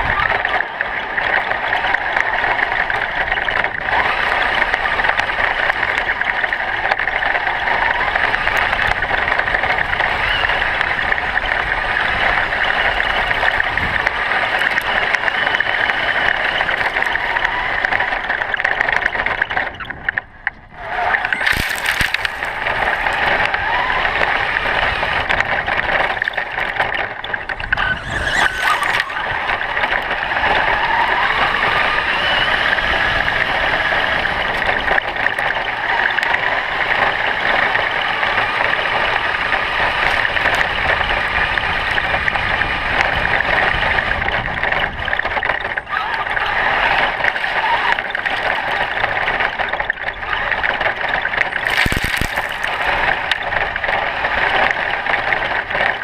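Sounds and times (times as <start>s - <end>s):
tyre noise: 0.0s - 56.0s
loud rushes of noise: 20.7s - 44.1s, 51.5s - 55.2s
electric motor whine: 20.8s - 43.7s.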